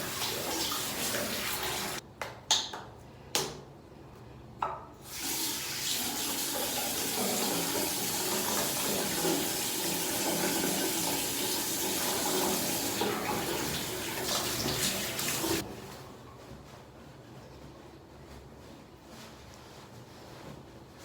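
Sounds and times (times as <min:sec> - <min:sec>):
water running from a tap: 0:00.0 - 0:02.0, 0:05.0 - 0:15.6.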